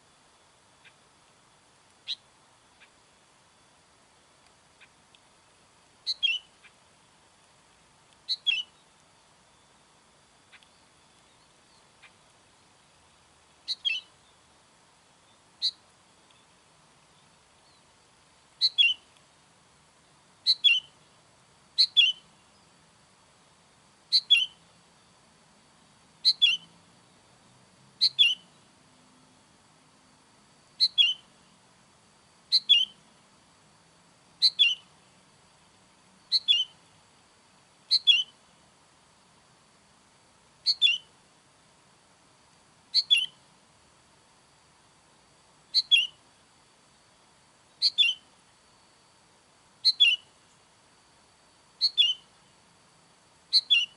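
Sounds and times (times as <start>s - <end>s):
bird calling: 2.0s - 3.0s, 6.0s - 6.8s, 8.3s - 8.9s, 13.6s - 14.3s, 15.6s - 16.4s, 18.6s - 19.1s, 20.4s - 21.0s, 21.8s - 22.3s, 24.1s - 24.6s, 26.2s - 26.7s, 28.0s - 28.6s, 30.8s - 31.3s, 32.5s - 33.0s, 34.4s - 34.9s, 36.3s - 36.8s, 37.9s - 38.4s, 40.6s - 41.1s, 42.9s - 43.4s, 45.7s - 46.2s, 47.8s - 48.3s, 49.8s - 50.3s, 51.8s - 52.3s, 53.5s - 53.9s.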